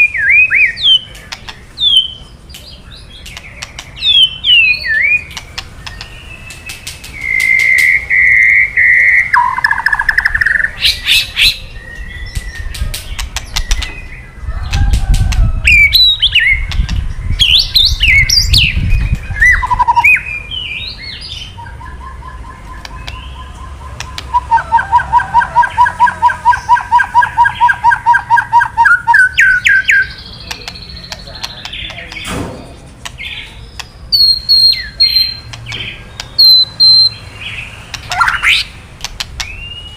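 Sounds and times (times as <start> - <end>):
bird singing whistles and clicks: 0.0 - 14.1, 21.9 - 24.6, 25.7 - 32.3, 33.0 - 37.2, 37.9 - 39.9.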